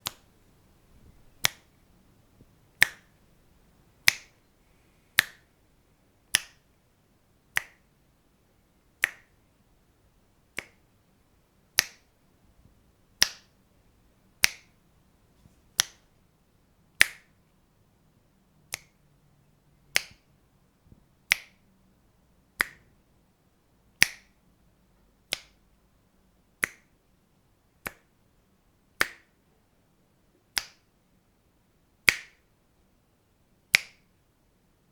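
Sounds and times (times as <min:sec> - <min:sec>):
fingers snapping: 0:00.0 - 0:00.3, 0:01.4 - 0:01.7, 0:02.8 - 0:03.2, 0:04.0 - 0:04.4, 0:05.2 - 0:05.5, 0:06.3 - 0:06.6, 0:07.6 - 0:07.8, 0:09.0 - 0:09.3, 0:10.6 - 0:10.8, 0:11.8 - 0:12.1, 0:13.2 - 0:13.5, 0:14.4 - 0:14.7, 0:15.8 - 0:16.0, 0:17.0 - 0:17.3, 0:18.7 - 0:19.0, 0:19.9 - 0:20.3, 0:21.3 - 0:21.6, 0:22.6 - 0:22.9, 0:24.0 - 0:24.4, 0:25.3 - 0:25.6, 0:26.6 - 0:26.9, 0:27.8 - 0:28.1, 0:29.0 - 0:29.3, 0:30.6 - 0:30.8, 0:32.1 - 0:32.4, 0:33.7 - 0:34.0.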